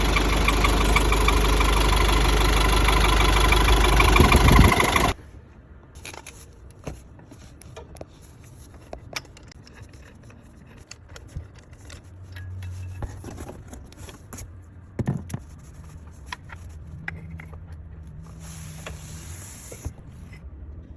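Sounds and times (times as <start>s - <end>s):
loud engine running: 0.0s - 5.2s
tools clicking and scraping: 5.9s - 20.6s.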